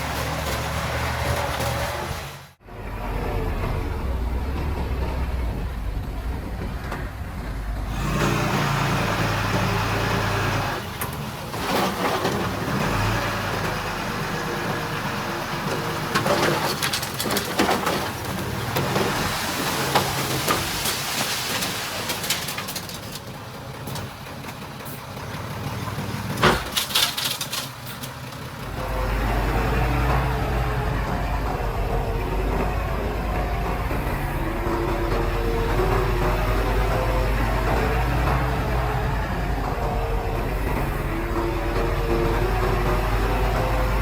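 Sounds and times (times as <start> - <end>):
low engine hum: 0.0 - 16.7, 27.9 - 44.0
metallic clanking and rattling: 15.7 - 19.2, 26.2 - 44.0.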